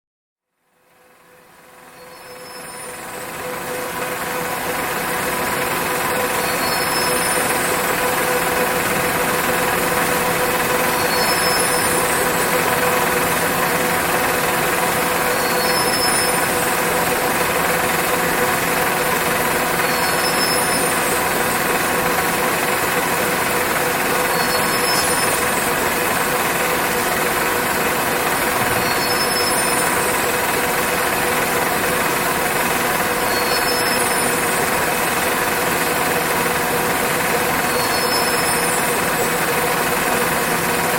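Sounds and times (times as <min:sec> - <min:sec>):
machine whirring and humming: 0:01.6 - 0:40.9
short high-pitched squeak: 0:28.6 - 0:30.0.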